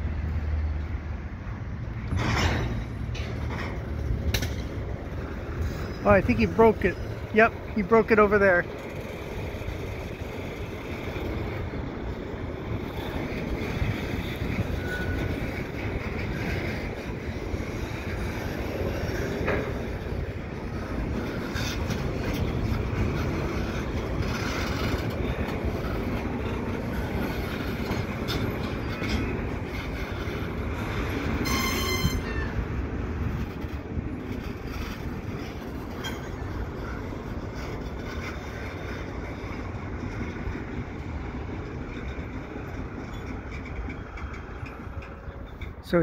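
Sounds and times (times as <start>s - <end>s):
freight cars rolling on track: 0.0s - 46.0s
wheels clicking over rail joints: 1.6s - 46.0s
metallic wheel squeal: 5.6s - 7.3s, 13.8s - 16.7s, 26.9s - 32.7s.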